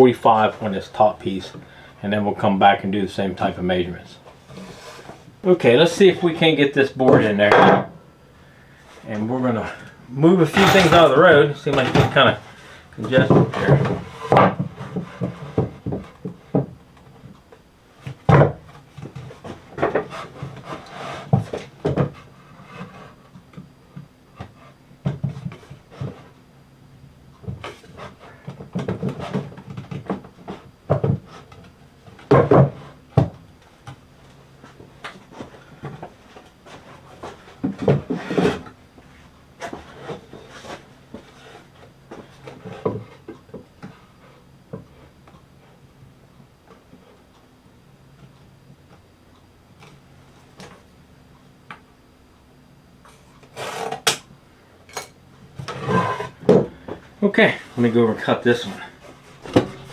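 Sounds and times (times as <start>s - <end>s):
wood knocking and scraping: 13.0s - 16.8s, 55.6s - 57.7s, 58.5s - 59.9s.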